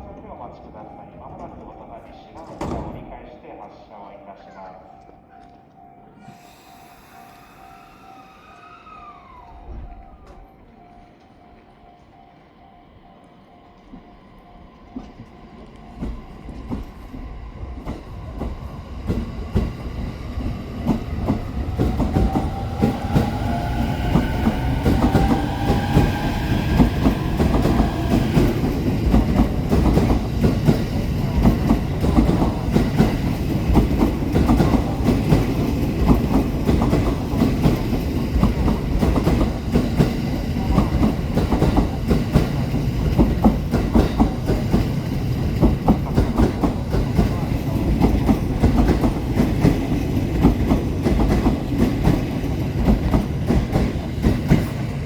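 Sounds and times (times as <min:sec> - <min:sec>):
electric train motor whine: 0:06.4 - 0:10.6
train wheels clattering over rail joints: 0:17.8 - 0:55.0.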